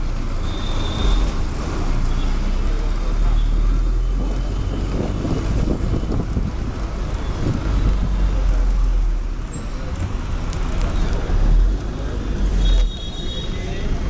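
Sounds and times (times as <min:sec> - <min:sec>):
bus diesel engine rumbling: 0:00.0 - 0:14.0
street traffic: 0:00.0 - 0:14.0
people talking: 0:02.2 - 0:14.0.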